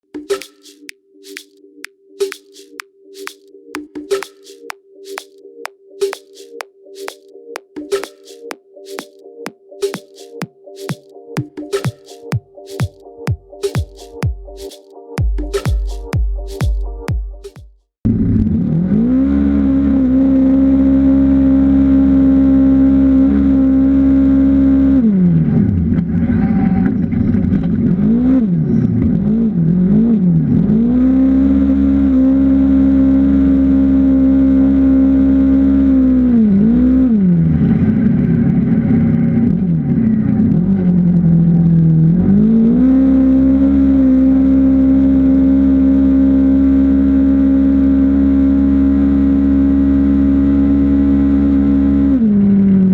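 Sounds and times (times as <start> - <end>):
racing vehicle engine revving: 18.2 - 52.8.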